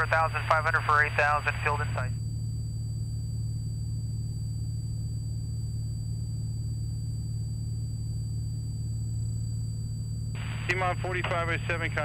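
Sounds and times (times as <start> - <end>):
airplane engine and propeller drone: 0.0 - 2.2, 10.4 - 12.0
high-pitched electrical whine: 0.0 - 12.0.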